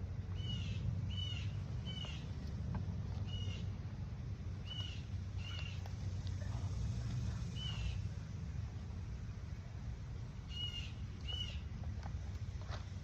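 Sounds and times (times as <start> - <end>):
steady low rumble: 0.0 - 13.0
bird calling: 0.3 - 2.4, 3.2 - 3.8, 4.6 - 5.9, 10.4 - 11.7.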